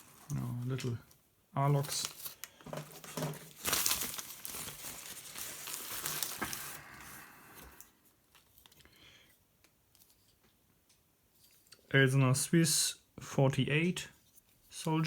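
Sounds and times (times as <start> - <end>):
packaging crinkling and tearing: 1.6 - 8.9.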